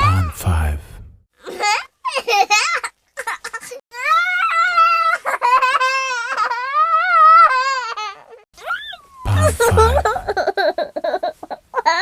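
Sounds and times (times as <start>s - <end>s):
high-pitched squealing laugh: 5.1s - 12.0s
children giggling: 9.3s - 11.4s.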